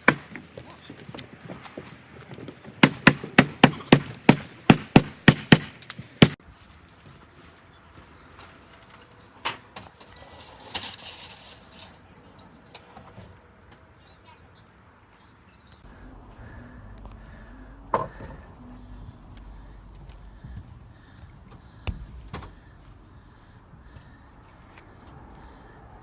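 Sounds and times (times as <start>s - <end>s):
hammer blows on wooden boards: 0.0s - 0.8s, 2.7s - 6.4s, 17.9s - 18.5s.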